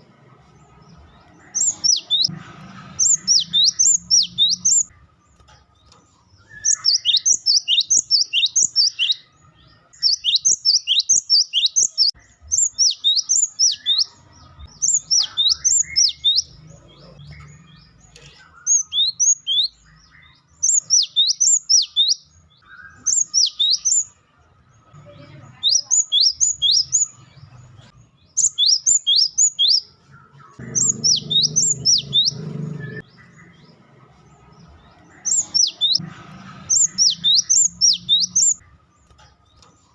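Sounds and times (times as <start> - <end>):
bird singing whistled notes: 1.5 - 2.3, 3.0 - 5.0, 6.4 - 24.2, 25.6 - 27.2, 28.2 - 33.7, 34.8 - 36.0, 36.7 - 38.7.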